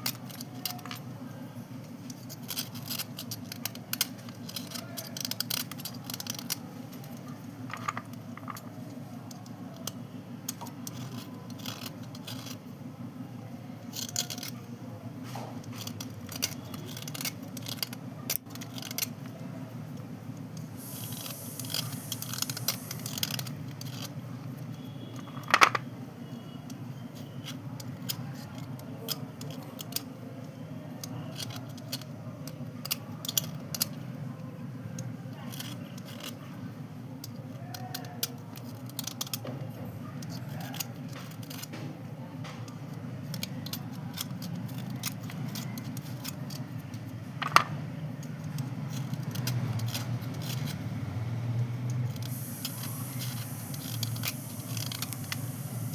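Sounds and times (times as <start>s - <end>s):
slate pencils clicking and scraping: 2.0s - 12.7s, 13.8s - 14.7s, 15.4s - 19.4s, 20.4s - 25.8s, 31.0s - 34.1s, 35.0s - 36.5s, 37.2s - 39.5s, 42.7s - 55.9s.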